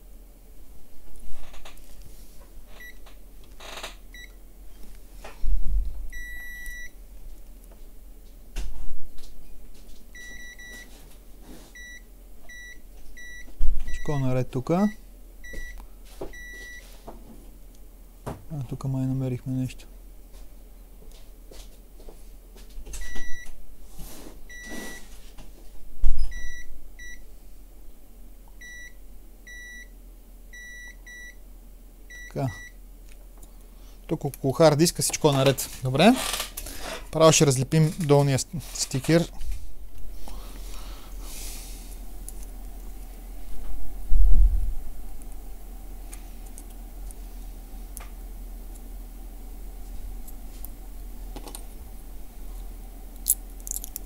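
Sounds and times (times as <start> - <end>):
multimeter high beeps: 6.2 - 6.9.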